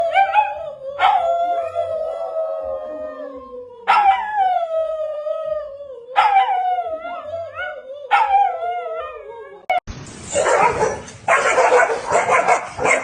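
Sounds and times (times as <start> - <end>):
dog howling: 0.0 - 9.8.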